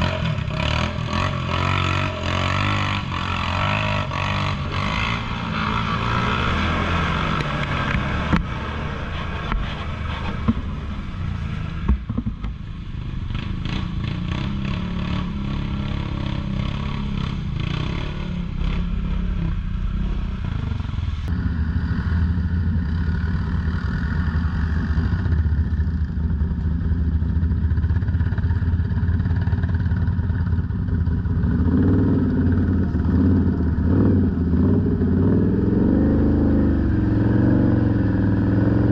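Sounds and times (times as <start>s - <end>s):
quad bike engine running: 0.0s - 38.9s.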